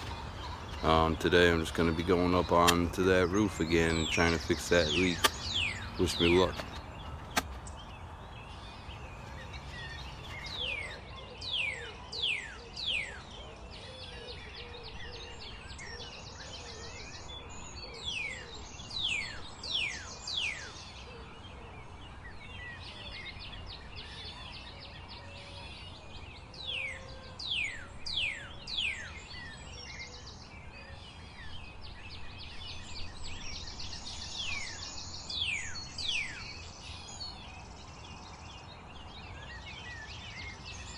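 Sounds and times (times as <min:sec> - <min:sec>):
birds whistling: 0:00.0 - 0:13.2.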